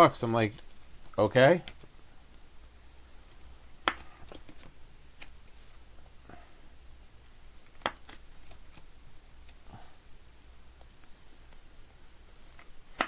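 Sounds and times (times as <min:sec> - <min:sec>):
cards rustling in sleeves: 0:00.1 - 0:02.1, 0:03.2 - 0:06.2, 0:07.5 - 0:09.7.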